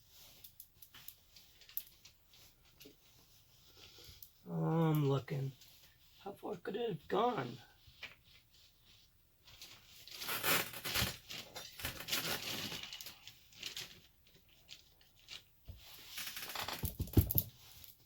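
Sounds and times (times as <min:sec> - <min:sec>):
rustling and scraping by hand: 0:00.0 - 0:18.0.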